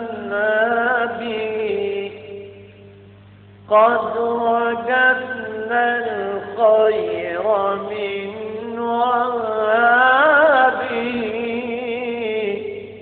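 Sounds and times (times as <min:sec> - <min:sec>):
devotional chant singing: 0:00.0 - 0:02.7, 0:03.6 - 0:13.0.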